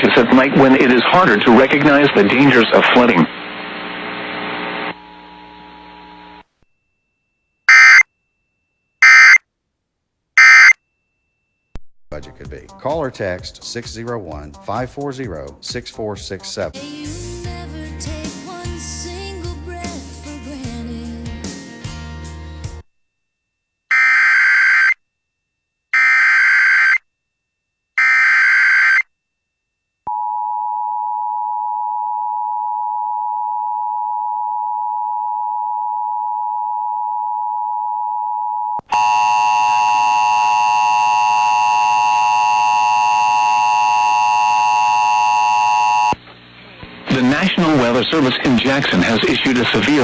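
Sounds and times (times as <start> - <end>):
harsh buzzy tone: 7.7 - 8.0, 9.0 - 9.4, 10.4 - 10.8, 23.9 - 25.0, 26.0 - 27.0, 28.0 - 29.1
screechy digital data bursts: 7.7 - 8.0, 9.0 - 9.4, 10.4 - 10.8, 28.0 - 29.0
two-tone attention signal: 7.7 - 8.1, 9.0 - 9.4, 10.4 - 10.8.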